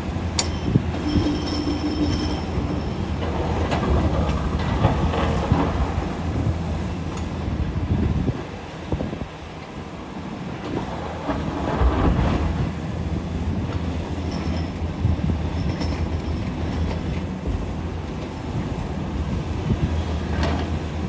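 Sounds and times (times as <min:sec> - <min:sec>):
excavator diesel engine rumbling: 0:00.0 - 0:21.0
grinding and clattering: 0:00.4 - 0:06.4.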